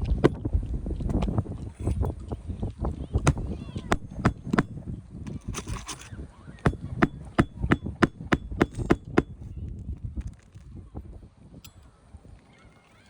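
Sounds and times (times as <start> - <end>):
hammer striking nails: 0.0 - 0.5, 3.2 - 4.8, 6.7 - 9.4.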